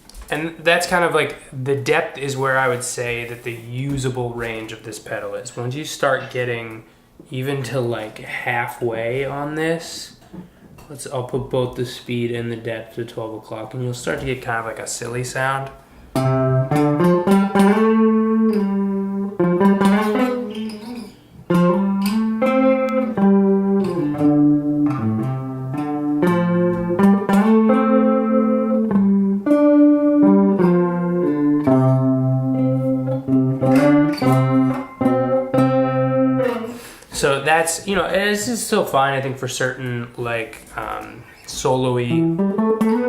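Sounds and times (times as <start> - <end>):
electric guitar with chorus effect: 16.1 - 37.1, 41.9 - 43.0.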